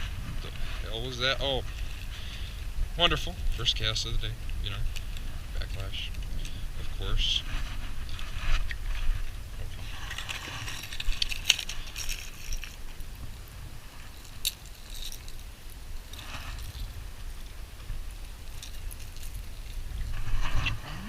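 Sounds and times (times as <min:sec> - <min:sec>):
wind rumbling on microphone: 0:00.0 - 0:21.0.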